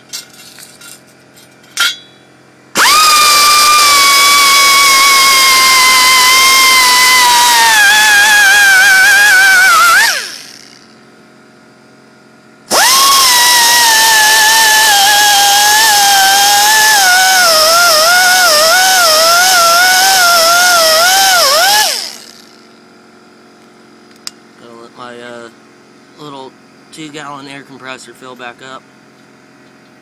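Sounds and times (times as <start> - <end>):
air grinder whining: 2.7 - 11.1, 12.7 - 26.5.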